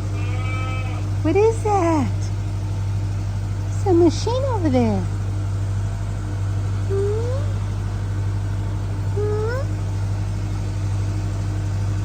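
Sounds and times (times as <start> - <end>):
farm machine droning: 0.0 - 12.0
short rising calls: 6.9 - 7.6, 9.1 - 9.8.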